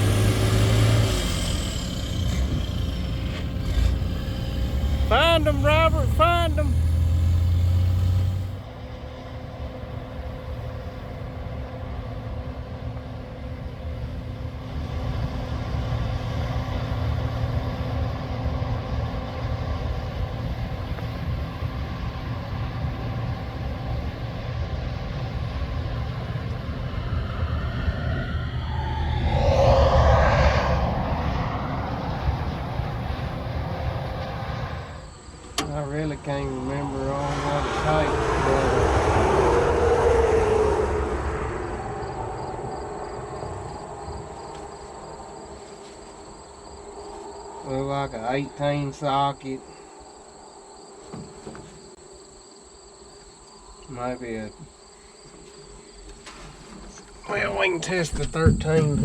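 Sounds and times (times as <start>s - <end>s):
farm machinery engine running: 0.0s - 27.0s, 57.2s - 59.0s
loud machine passing by: 0.0s - 47.5s.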